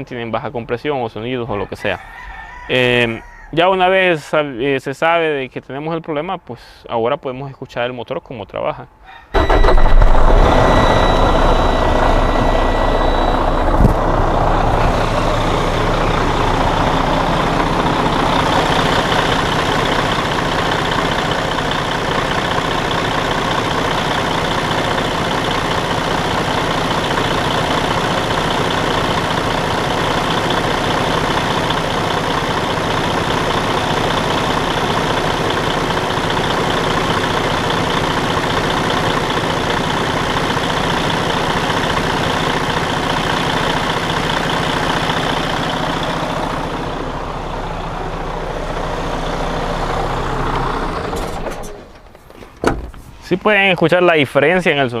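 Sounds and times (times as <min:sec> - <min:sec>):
engine knock: 0:09.4 - 0:51.2
diesel engine idling: 0:09.4 - 0:52.3.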